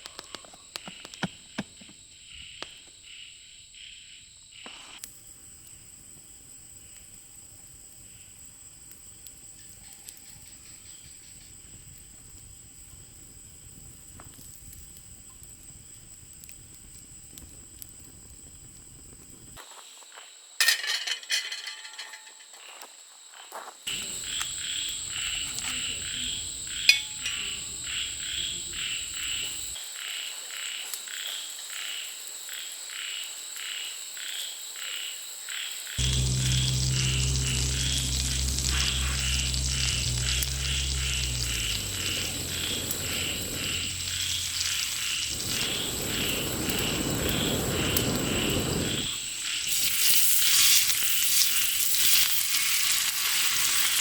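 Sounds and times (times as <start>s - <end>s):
clattering: 20.6s - 22.6s
insect high-pitched trill: 23.9s - 29.8s, 36.0s - 54.0s
rhythmic insect chirping: 23.9s - 29.8s, 36.0s - 52.2s.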